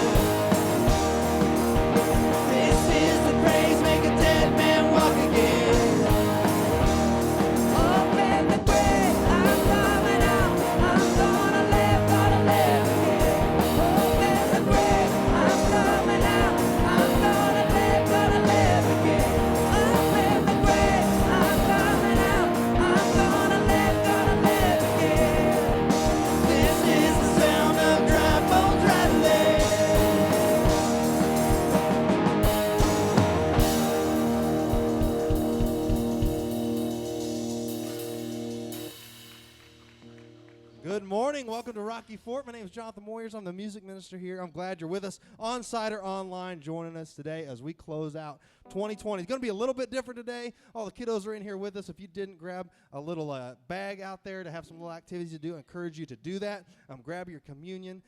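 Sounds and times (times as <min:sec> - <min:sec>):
person singing: 0:00.0 - 0:01.1, 0:02.0 - 0:31.6, 0:48.7 - 0:49.2
rock band playing: 0:00.0 - 0:41.0.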